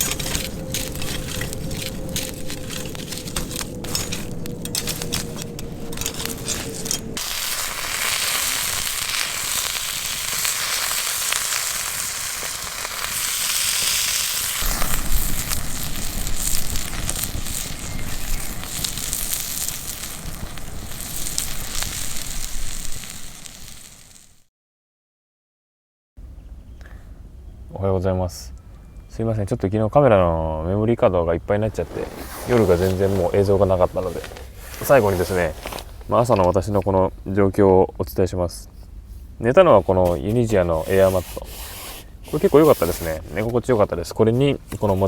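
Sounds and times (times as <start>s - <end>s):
wood fire crackling and popping: 0.0s - 24.4s, 31.7s - 37.0s.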